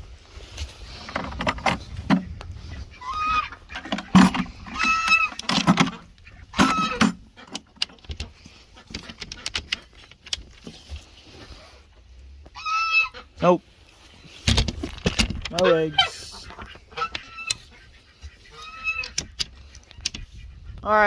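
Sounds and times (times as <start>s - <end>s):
knocks and rattles from coop: 0.9s - 11.1s, 14.3s - 20.6s
goose-like honking: 2.7s - 4.2s, 12.6s - 13.4s, 15.5s - 19.3s.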